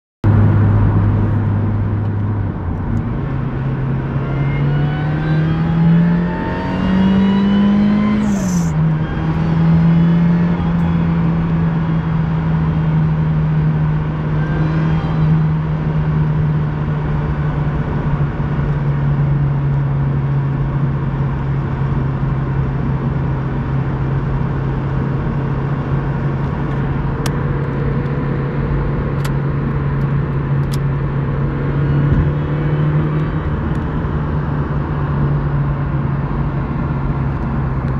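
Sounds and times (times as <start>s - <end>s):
car engine revving: 0.2s - 37.9s
supercharger belt squeal: 14.1s - 15.6s.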